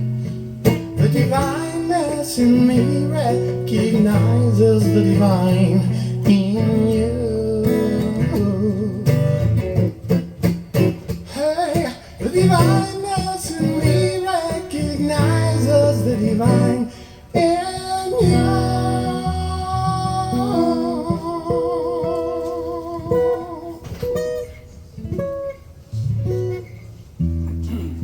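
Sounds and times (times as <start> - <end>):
acoustic guitar strumming: 0.0 - 28.0
person singing wordlessly: 1.0 - 9.5, 11.3 - 24.2.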